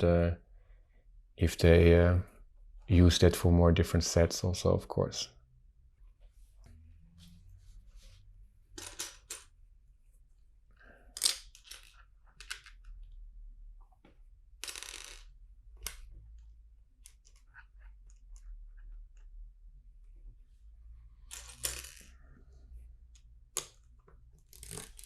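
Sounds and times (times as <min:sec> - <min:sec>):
plastic bricks clicking and clattering: 0:11.1 - 0:13.1.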